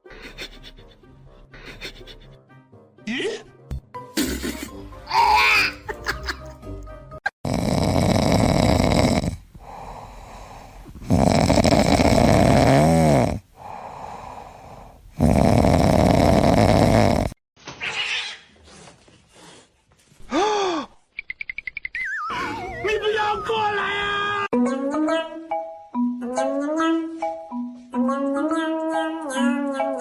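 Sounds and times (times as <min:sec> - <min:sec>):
animal snoring loudly: 0:07.4 - 0:17.4
quiet breaths: 0:09.3 - 0:12.5, 0:13.3 - 0:15.7.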